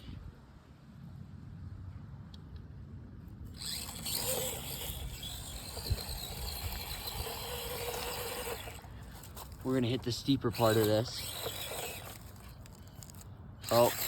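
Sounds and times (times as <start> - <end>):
toy car motor whirring: 3.4 - 14.0.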